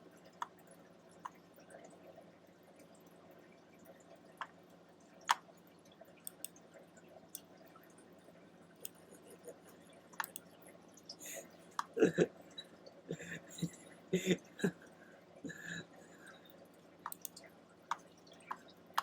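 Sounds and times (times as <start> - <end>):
sharp ticks: 17.1 - 18.0.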